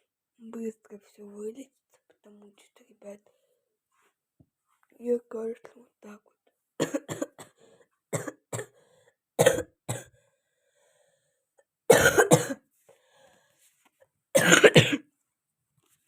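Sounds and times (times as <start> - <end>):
girl coughing: 6.8 - 8.8, 9.4 - 10.1, 11.9 - 12.6, 14.4 - 15.1.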